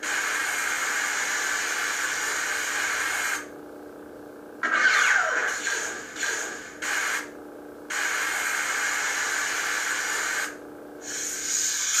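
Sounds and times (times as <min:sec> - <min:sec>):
lightsaber hum: 0:04.6 - 0:12.0.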